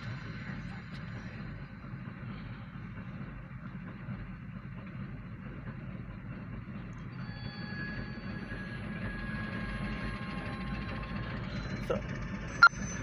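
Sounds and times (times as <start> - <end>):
freight train rumbling on track: 0.0 - 13.0.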